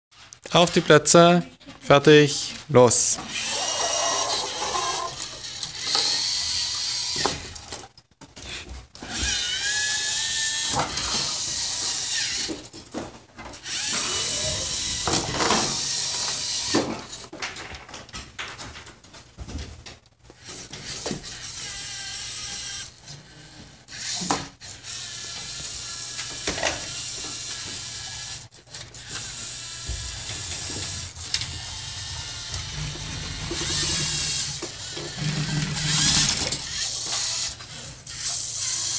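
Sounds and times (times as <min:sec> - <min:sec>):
robot motors and gears whirring: 0:03.3 - 0:07.6, 0:09.0 - 0:12.5, 0:13.6 - 0:16.7, 0:20.7 - 0:38.9.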